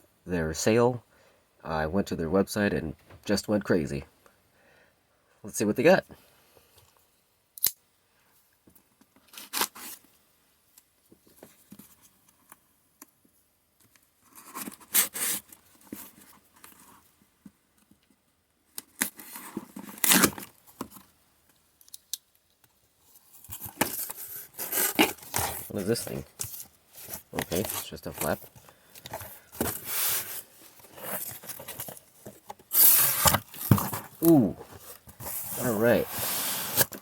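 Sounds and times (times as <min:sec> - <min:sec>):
tape and packaging tearing: 0:09.3 - 0:10.0, 0:18.8 - 0:20.6, 0:32.7 - 0:34.3.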